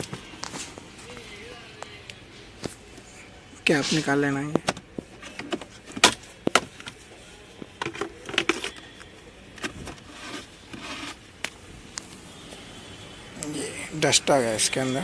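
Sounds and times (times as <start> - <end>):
scraping and rustling: 9.6 - 13.6.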